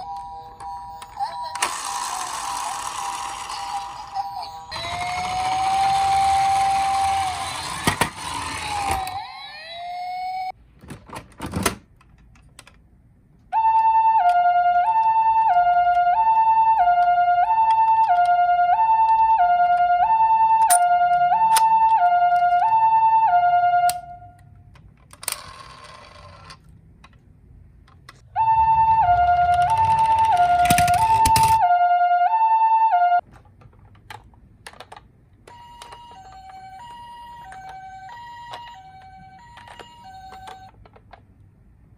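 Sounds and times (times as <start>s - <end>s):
toy two-tone siren: 0.0s - 10.6s, 13.6s - 24.3s, 28.4s - 33.2s, 35.5s - 40.8s
steady tone: 28.2s - 31.5s.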